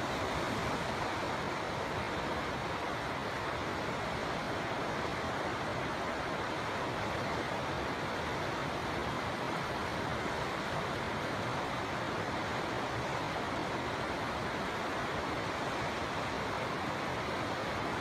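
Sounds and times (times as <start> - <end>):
river water flowing: 0.0 - 18.0.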